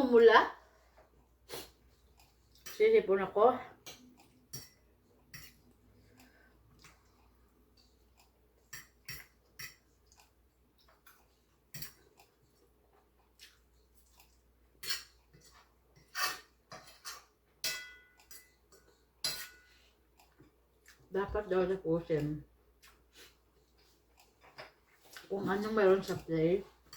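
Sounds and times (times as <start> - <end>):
quiet chewing: 0.8 - 2.8, 3.7 - 16.2, 16.9 - 21.2, 22.1 - 26.9
utensils clinking against a bowl: 3.7 - 7.0, 8.7 - 10.0, 14.8 - 20.6.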